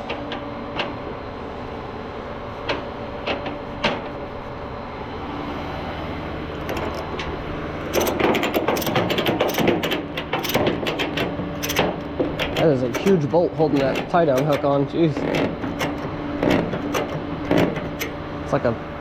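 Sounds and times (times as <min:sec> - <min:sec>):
low engine hum: 0:00.0 - 0:08.3
ratchet strap clicking: 0:07.9 - 0:18.2.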